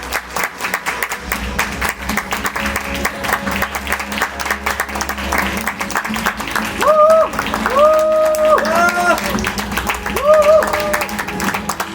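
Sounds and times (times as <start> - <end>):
audience applauding: 0.0 - 11.9
background music: 0.0 - 11.9.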